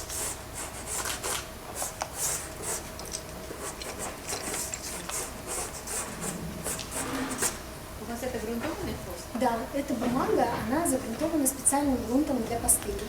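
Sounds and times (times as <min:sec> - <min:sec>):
pastel scratching on paper: 0:03.6 - 0:07.6.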